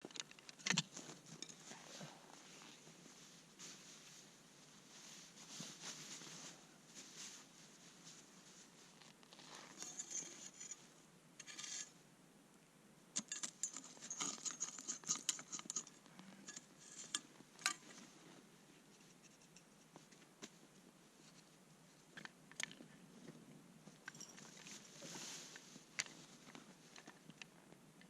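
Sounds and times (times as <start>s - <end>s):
objects handled with scrapes: 8.1s - 12.0s, 13.2s - 19.9s.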